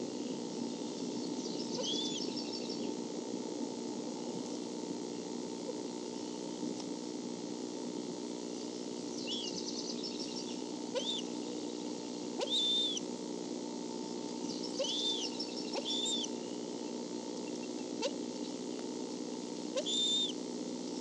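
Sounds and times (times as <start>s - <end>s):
steady low hum: 0.0s - 21.0s
eagle chirping: 1.1s - 3.0s, 9.1s - 11.8s, 12.4s - 13.1s, 14.4s - 16.7s, 17.4s - 18.6s, 19.7s - 20.4s.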